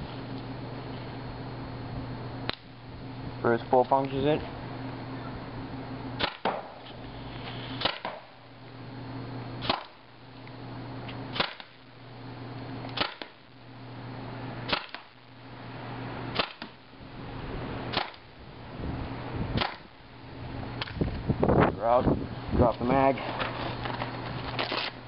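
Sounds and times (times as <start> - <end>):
paintball pistol shots: 6.2 - 6.8, 7.8 - 8.3, 9.6 - 10.0, 11.3 - 11.8, 13.0 - 13.4, 14.7 - 15.2, 16.3 - 16.8, 17.9 - 18.2, 19.6 - 19.9.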